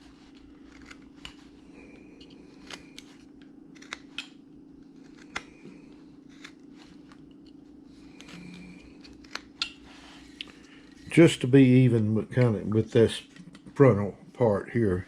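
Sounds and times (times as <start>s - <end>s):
steady low hum: 0.0s - 15.0s
carving tool snicking wood: 0.3s - 1.4s, 2.2s - 3.2s, 3.8s - 4.4s, 5.0s - 5.6s, 6.3s - 6.6s.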